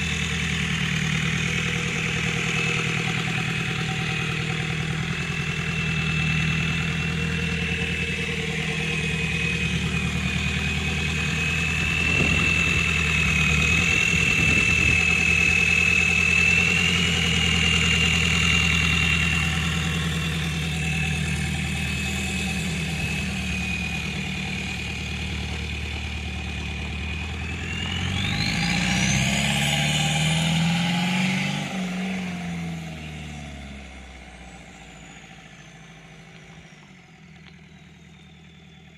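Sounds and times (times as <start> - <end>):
diesel engine idling: 0.0 - 38.9.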